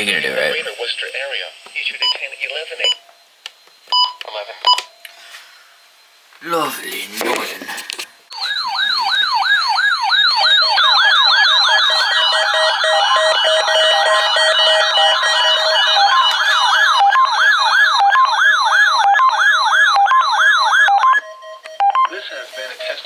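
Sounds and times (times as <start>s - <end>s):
weather radio alarms warbling: 0.0s - 0.9s, 8.3s - 23.0s
steady beeping: 10.4s - 17.4s.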